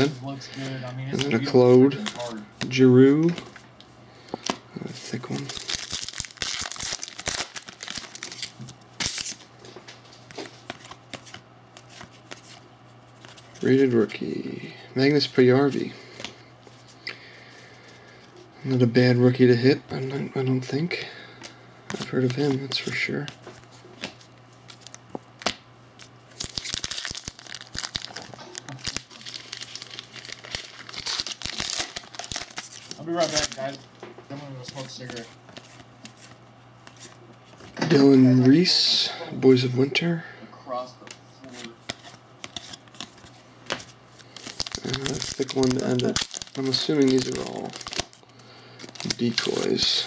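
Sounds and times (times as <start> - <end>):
cards rustling: 0.0 - 3.6, 4.3 - 14.1, 21.4 - 37.8, 41.4 - 50.0
foil wrapper crinkling and tearing: 5.0 - 9.4, 26.0 - 33.8, 44.2 - 50.0.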